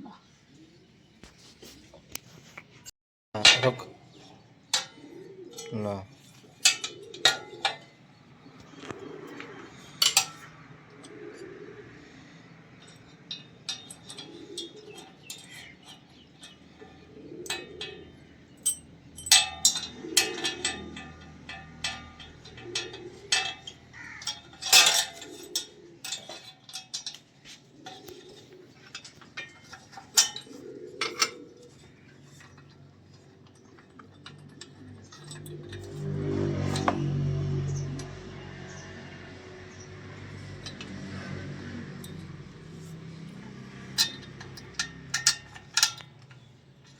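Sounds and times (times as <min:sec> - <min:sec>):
metal tools clinking on metal: 0:03.4 - 0:08.1, 0:08.8 - 0:46.9
soft cooing: 0:08.7 - 0:10.0, 0:11.0 - 0:12.5.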